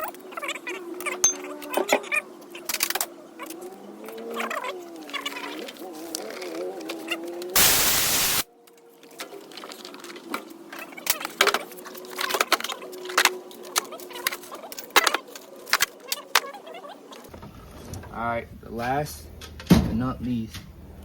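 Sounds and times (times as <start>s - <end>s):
metal hand tools clinking: 1.2s - 1.6s
loud burst of hiss: 7.6s - 8.5s.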